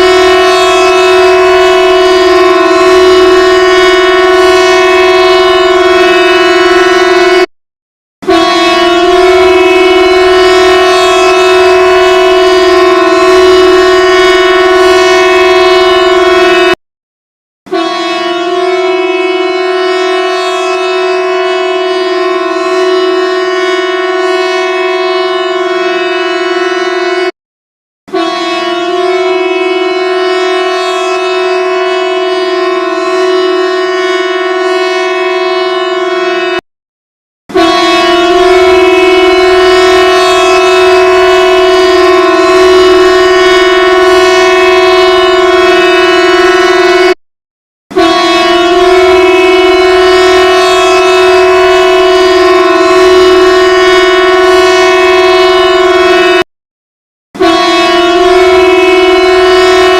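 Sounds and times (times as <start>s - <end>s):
steady alarm tone: 0.0s - 7.5s, 8.3s - 16.8s, 37.5s - 47.2s, 48.0s - 56.4s, 57.4s - 59.9s.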